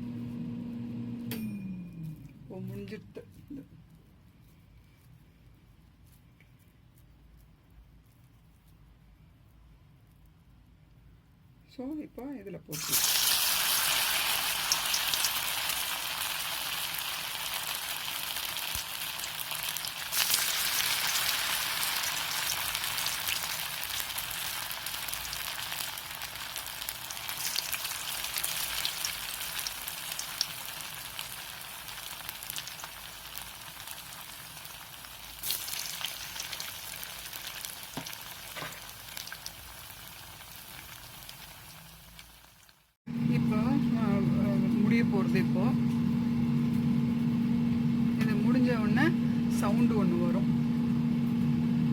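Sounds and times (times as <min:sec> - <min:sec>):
food deep-frying in hot oil: 0:12.7 - 0:43.0.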